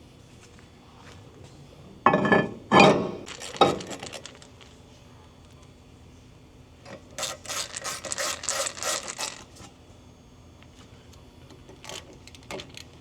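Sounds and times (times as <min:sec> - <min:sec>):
hand tool rasping strokes: 0:07.2 - 0:09.4.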